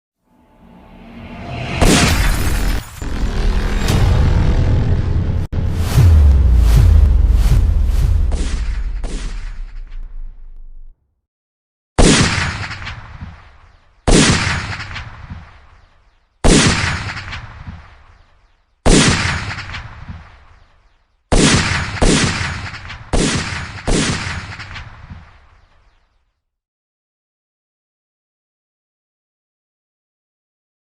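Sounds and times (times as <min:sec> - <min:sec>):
gunshots: 0:05.8 - 0:10.6, 0:12.0 - 0:18.3, 0:18.9 - 0:20.6, 0:21.3 - 0:25.8.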